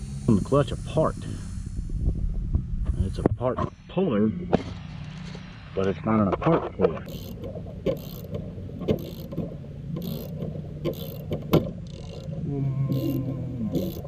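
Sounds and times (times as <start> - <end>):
steady low hum: 0.0 - 6.1, 6.8 - 14.0
ratchet wrench clicking: 7.1 - 9.4, 10.0 - 12.3, 12.9 - 14.0
sharp metal knocks: 7.1 - 12.3.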